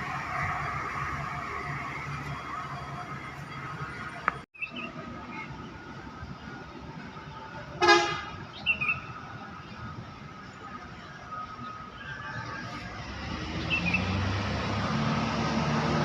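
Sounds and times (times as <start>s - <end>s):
road traffic hum: 0.0s - 16.0s
vehicle horn toot: 7.8s - 8.4s.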